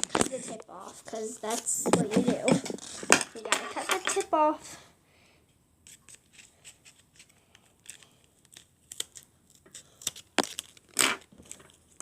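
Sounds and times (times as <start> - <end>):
scissors snipping paper: 5.9 - 12.0.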